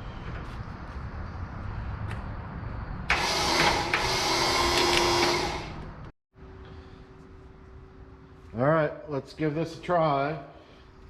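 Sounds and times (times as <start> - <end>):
loud motor whir: 3.1 - 5.8.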